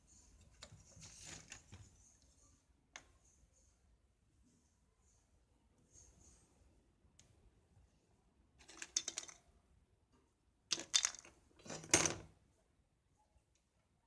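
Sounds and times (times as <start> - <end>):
small hard objects clattering: 8.6 - 9.4, 10.7 - 12.0.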